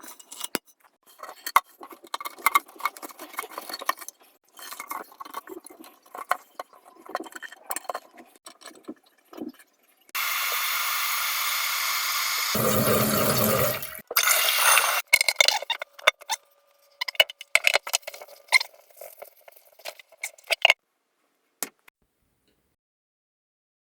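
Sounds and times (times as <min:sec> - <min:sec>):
water gurgling: 0:10.2 - 0:15.0
rushing water: 0:12.3 - 0:14.0
toilet tank parts clinking: 0:15.1 - 0:16.4.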